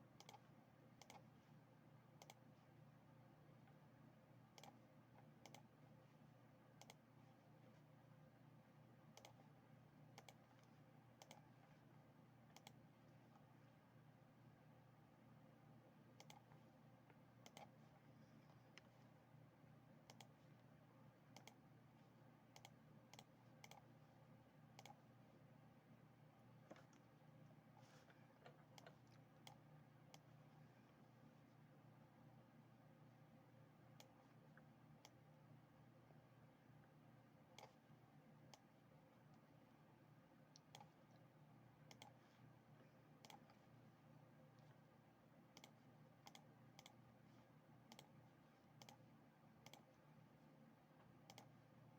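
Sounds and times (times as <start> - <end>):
low steady hum: 0.0 - 51.9
computer mouse clicks: 0.2 - 1.3, 2.2 - 2.5, 4.5 - 5.7, 6.8 - 7.1, 9.1 - 9.4, 10.1 - 11.5, 12.5 - 12.8, 16.2 - 17.8, 20.1 - 20.4, 21.3 - 21.6, 22.5 - 23.9, 24.7 - 25.0, 28.4 - 30.4, 34.0 - 35.3, 37.5 - 37.8, 38.5 - 39.4, 40.5 - 41.2, 41.9 - 42.2, 43.2 - 43.6, 45.5 - 47.0, 47.9 - 48.2, 48.8 - 49.0, 49.6 - 50.0, 51.2 - 51.6.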